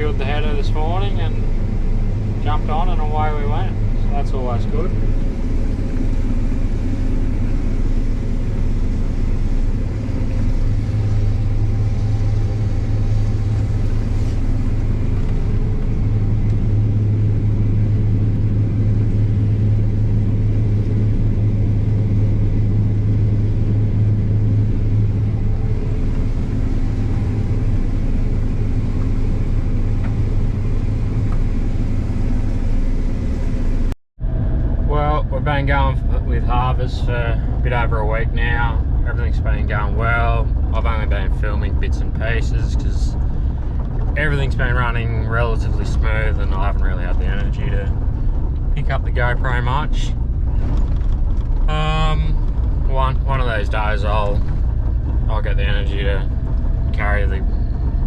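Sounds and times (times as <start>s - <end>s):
combine harvester drone: 0.0s - 58.0s.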